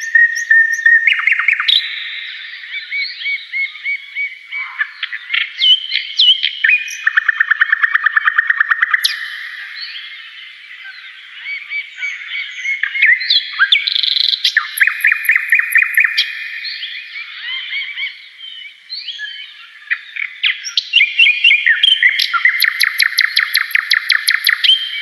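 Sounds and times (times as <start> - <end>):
faint high ticking calls: 0.0 - 25.0
songbirds singing and chirping: 0.0 - 25.0
rapid bird trill: 4.6 - 18.4, 19.2 - 25.0.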